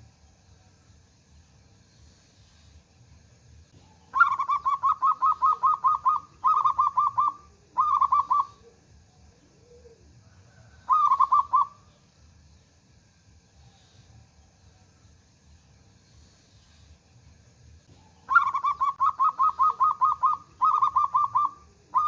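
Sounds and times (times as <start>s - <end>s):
dove cooing: 3.8s - 11.9s, 17.9s - 22.0s.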